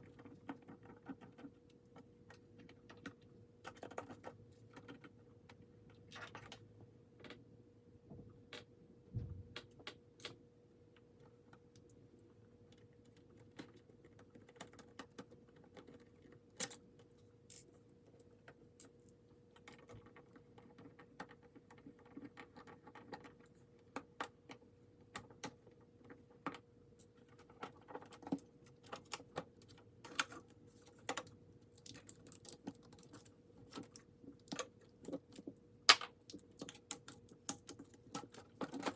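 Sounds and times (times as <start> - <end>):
faint steady hum: 0.0 - 38.9.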